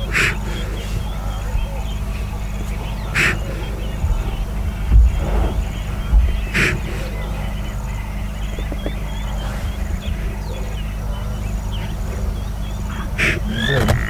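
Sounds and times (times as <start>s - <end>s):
small birds chirping: 0.0s - 14.0s
engine idling: 5.6s - 14.0s.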